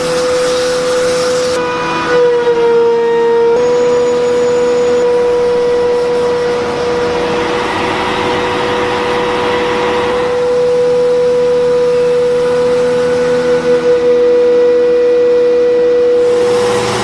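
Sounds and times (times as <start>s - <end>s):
hiss: 0.0s - 1.6s, 16.2s - 17.0s
power tool motor whining: 0.0s - 17.0s.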